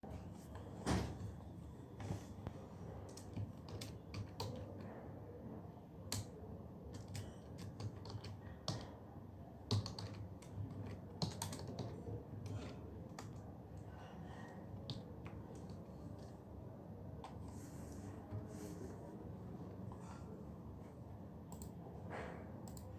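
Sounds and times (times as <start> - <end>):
typing on computer keyboard: 3.1 - 4.9, 6.1 - 9.0, 9.6 - 13.9, 14.7 - 16.3, 21.5 - 21.8, 22.6 - 22.9.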